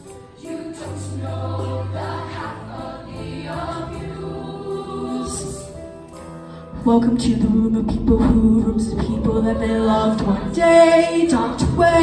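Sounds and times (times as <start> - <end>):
youth choir singing: 0.0 - 6.1, 9.1 - 12.0
musical backing: 0.0 - 12.0.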